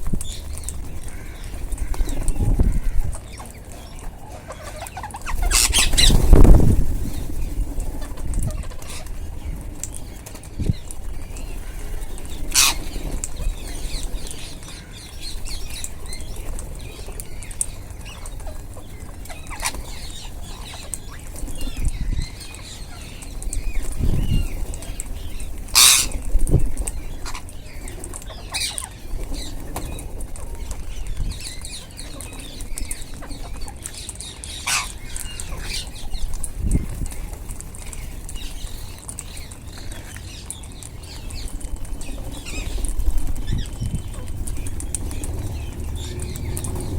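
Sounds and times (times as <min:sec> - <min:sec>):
wings flapping: 0:00.0 - 0:46.9
parrots chattering: 0:00.2 - 0:46.9
sharp parrot calls: 0:12.5 - 0:12.8, 0:25.7 - 0:26.2.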